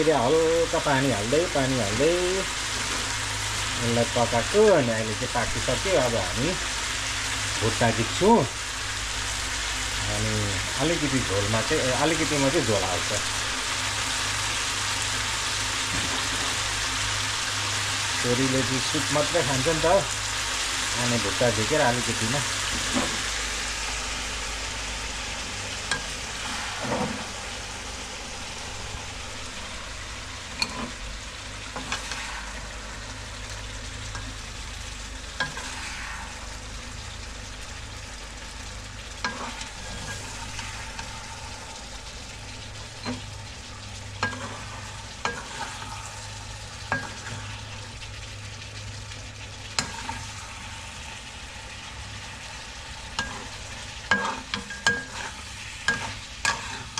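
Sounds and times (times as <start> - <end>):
chicken sizzling in a pan: 0.0 - 56.9
utensil scraping a pan: 30.6 - 31.0, 39.3 - 41.2, 44.2 - 46.0, 53.1 - 56.9.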